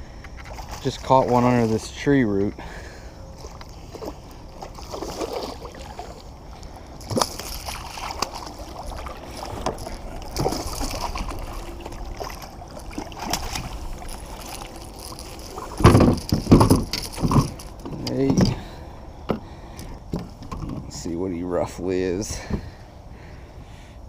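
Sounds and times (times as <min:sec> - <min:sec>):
water splashing: 0:03.4 - 0:18.8.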